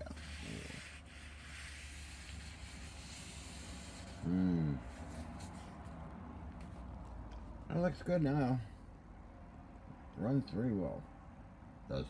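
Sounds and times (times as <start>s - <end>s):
faint rubbing: 0.0s - 6.0s
steady low hum: 0.0s - 12.0s
person humming mm: 4.1s - 5.0s.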